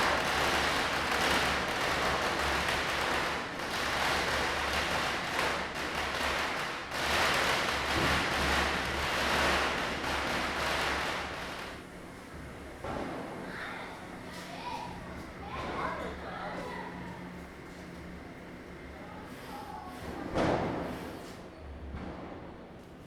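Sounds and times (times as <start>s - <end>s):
firecrackers bursting: 0.0s - 13.4s.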